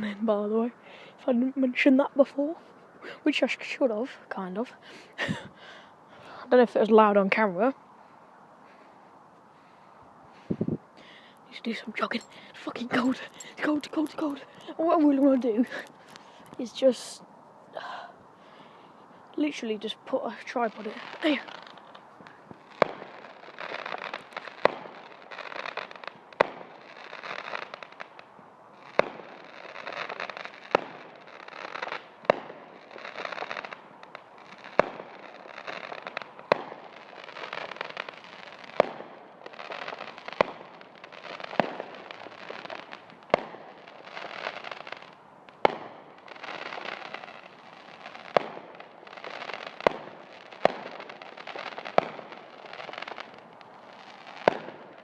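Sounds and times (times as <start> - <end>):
fireworks banging and crackling: 11.5 - 17.2, 19.4 - 55.0.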